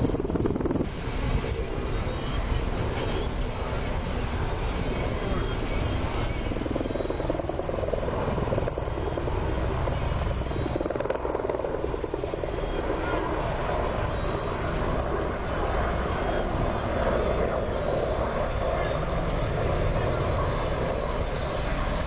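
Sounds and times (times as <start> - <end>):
helicopter engine noise: 0.0 - 22.0
helicopter rotor chop: 0.0 - 22.0.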